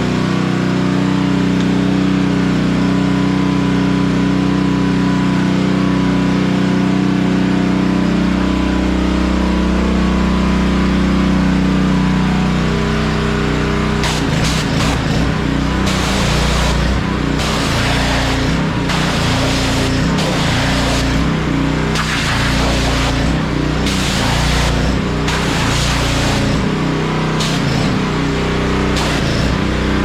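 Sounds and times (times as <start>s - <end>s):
small engine running: 0.0s - 30.0s
high-pressure water spray hiss: 14.0s - 26.7s, 27.4s - 28.0s, 29.0s - 29.6s.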